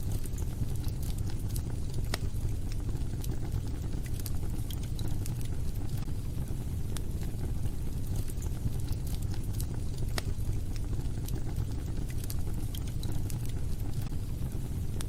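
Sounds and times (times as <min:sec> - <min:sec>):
fireplace fire crackling: 0:00.0 - 0:15.0.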